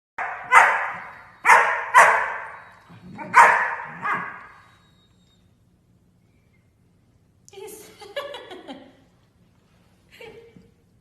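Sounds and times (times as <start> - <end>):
dog barking: 0.2 - 4.6.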